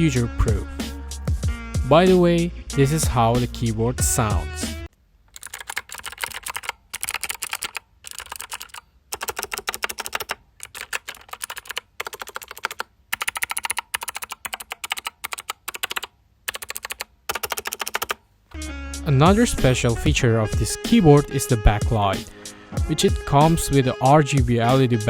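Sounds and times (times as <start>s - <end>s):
mechanical keyboard typing clicks: 5.3s - 18.2s.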